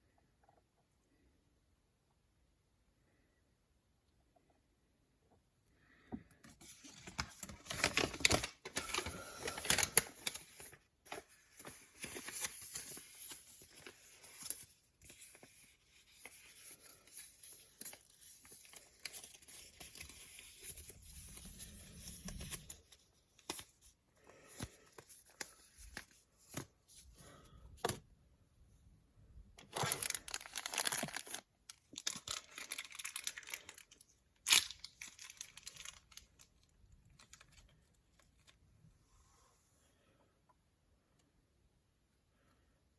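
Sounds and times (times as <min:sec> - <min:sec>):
packaging tearing and crinkling: 0:06.8 - 0:10.8, 0:29.6 - 0:36.5.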